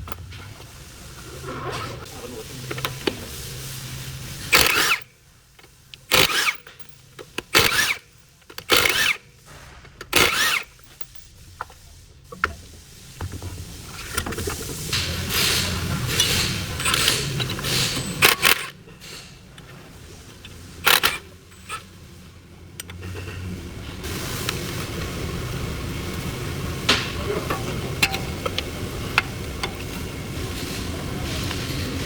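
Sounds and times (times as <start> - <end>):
metal tools scraping and clanking: 8.8 - 12.5, 14.0 - 21.9, 22.8 - 23.6, 27.2 - 32.0.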